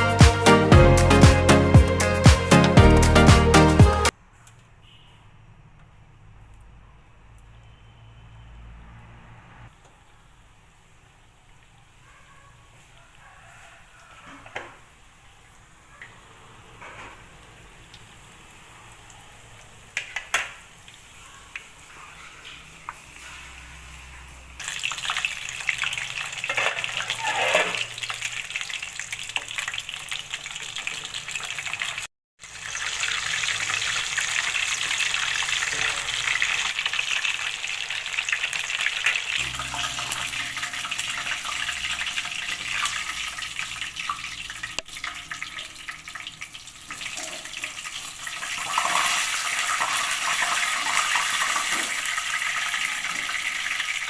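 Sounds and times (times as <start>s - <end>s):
chicken sizzling in hot oil: 12.9s - 54.0s.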